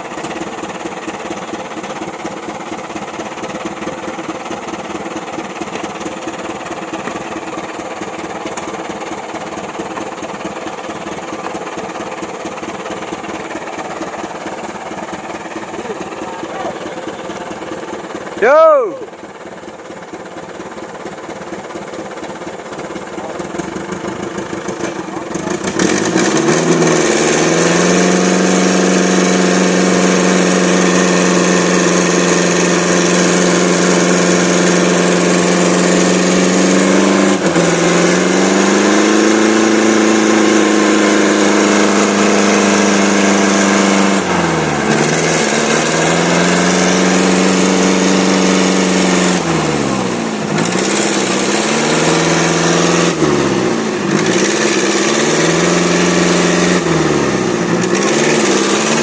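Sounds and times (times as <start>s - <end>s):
truck engine revving hard: 23.5s - 59.0s.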